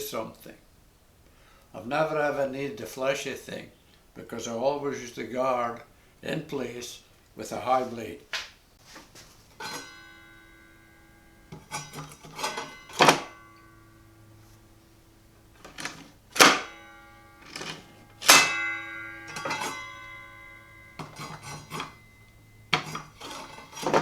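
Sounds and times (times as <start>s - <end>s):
metal parts knocking and ringing: 9.6s - 14.2s, 15.5s - 24.0s.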